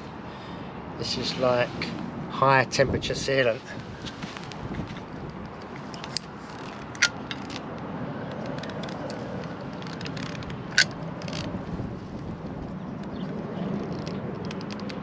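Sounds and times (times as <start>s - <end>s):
sharp clicks: 13.9s - 15.0s.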